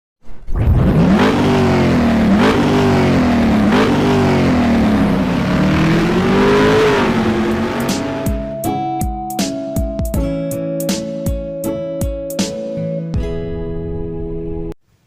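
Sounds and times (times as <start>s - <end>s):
car engine accelerating: 0.5s - 8.6s.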